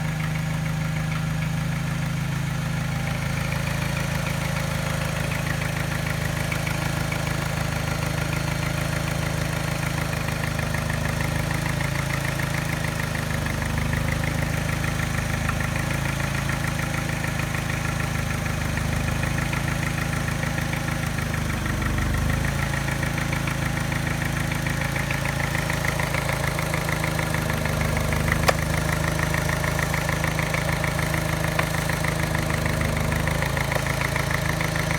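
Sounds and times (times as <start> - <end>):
engine idling roughly: 0.0 - 34.9
rhythmic engine tap: 23.3 - 34.9.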